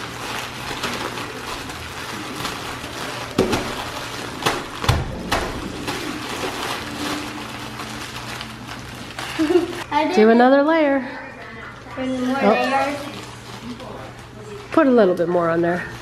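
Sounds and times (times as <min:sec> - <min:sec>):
cakes crunching in bowls: 0:00.0 - 0:09.9.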